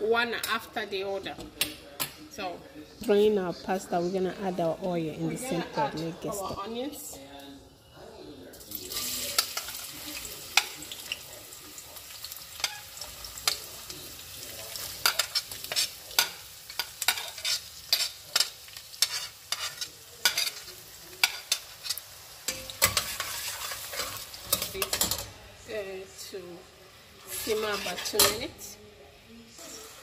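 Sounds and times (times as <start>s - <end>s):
onions sizzling in oil: 8.6s - 30.0s
utensil scraping pot: 14.7s - 25.2s, 27.2s - 28.6s.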